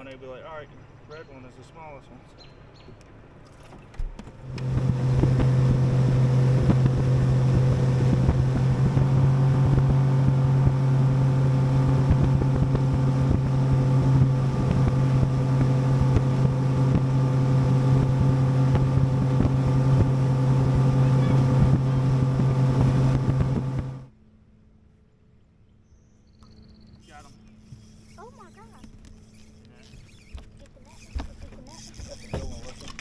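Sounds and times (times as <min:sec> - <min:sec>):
outboard motor droning: 0:03.5 - 0:24.2, 0:26.4 - 0:33.0
wind buffeting microphone: 0:04.4 - 0:24.1.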